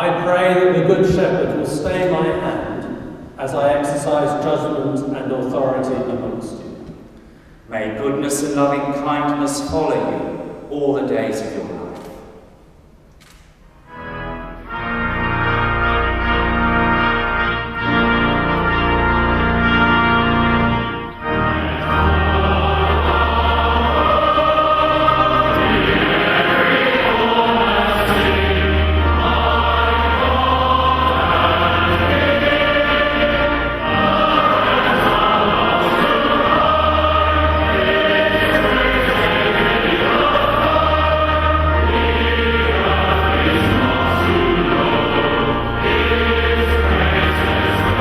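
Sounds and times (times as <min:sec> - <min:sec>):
brass playing: 0:13.9 - 0:48.0
choir singing: 0:14.0 - 0:48.0.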